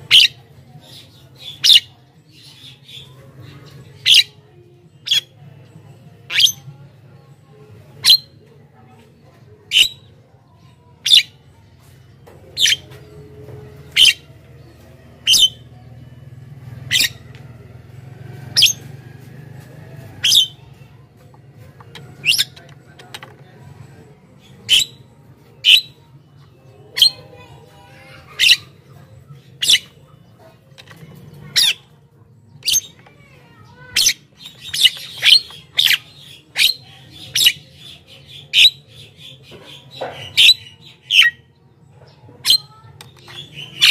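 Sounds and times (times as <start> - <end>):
mynas calling: 13.8 - 14.4, 15.2 - 15.7, 16.8 - 17.3, 20.2 - 20.7, 24.4 - 25.0, 27.0 - 28.8, 31.4 - 32.0, 33.8 - 41.4.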